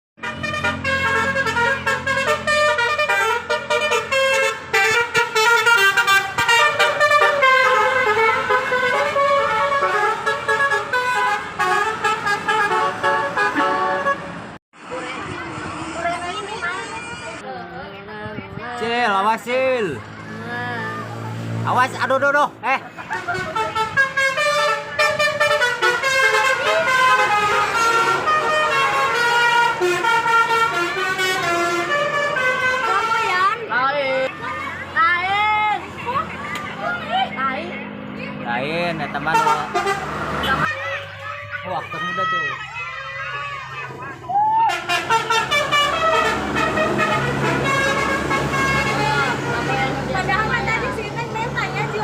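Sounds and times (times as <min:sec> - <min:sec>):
bus musical horn melody: 0:00.2 - 0:14.6, 0:23.0 - 0:34.5, 0:39.1 - 0:41.1, 0:44.7 - 0:50.9.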